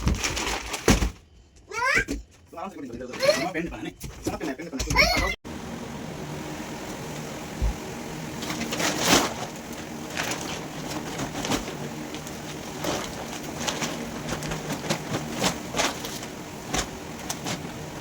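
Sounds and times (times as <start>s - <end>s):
plastic packaging crackling: 0.0s - 1.2s, 8.4s - 18.0s.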